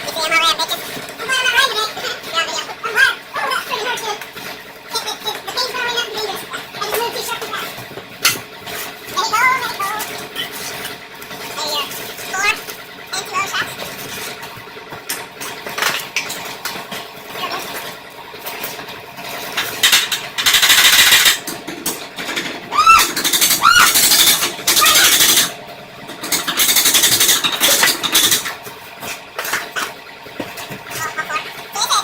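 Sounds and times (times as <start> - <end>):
short squeals: 22.7 - 25.5.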